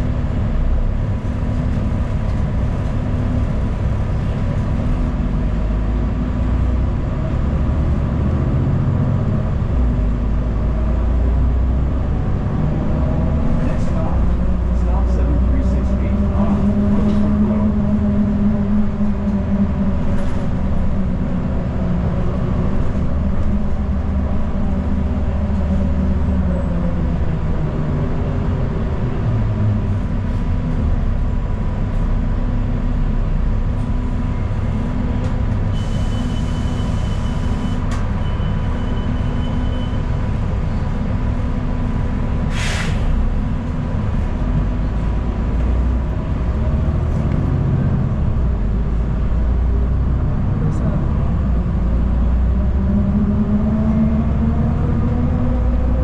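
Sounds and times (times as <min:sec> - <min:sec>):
bus engine and road rumble: 0:00.0 - 0:56.0
short hiss: 0:42.5 - 0:43.1.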